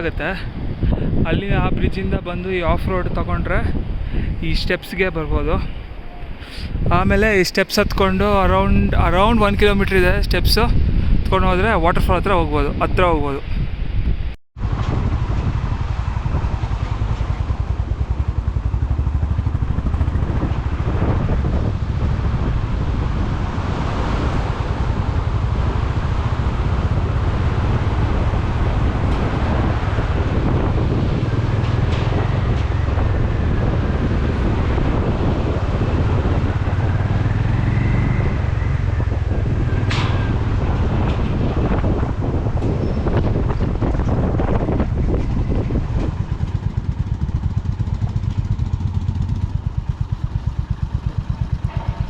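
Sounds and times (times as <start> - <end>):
wind buffeting microphone: 0.0 - 52.0
motorcycle engine running: 14.6 - 52.0.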